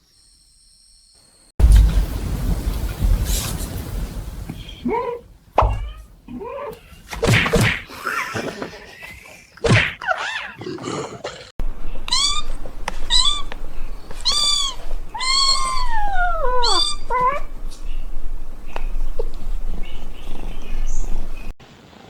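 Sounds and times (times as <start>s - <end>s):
kitten meowing: 4.8s - 6.9s, 12.1s - 13.5s, 14.2s - 17.5s
thumps and scuffling: 5.6s - 10.0s.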